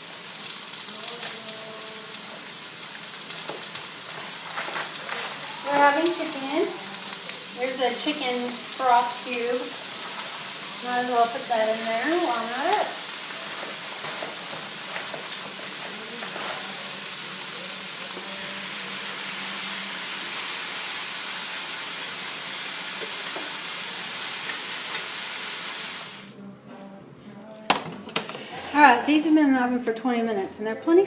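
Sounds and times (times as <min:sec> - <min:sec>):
chicken and onions sizzling: 0:00.0 - 0:26.4.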